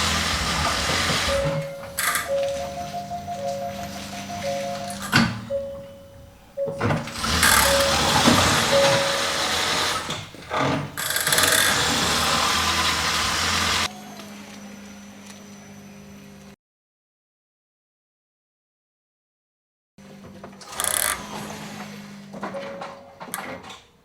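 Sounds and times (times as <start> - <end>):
car rolling mechanical noise: 0.0 - 13.9.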